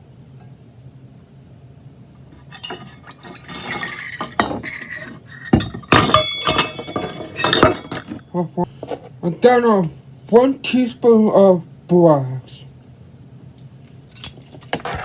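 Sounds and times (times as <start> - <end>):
cup and container clinking: 2.4 - 8.2.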